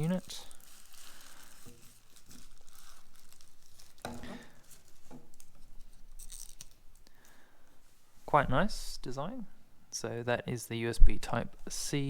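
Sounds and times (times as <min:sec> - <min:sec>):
plastic packaging crinkling: 0:00.0 - 0:07.4.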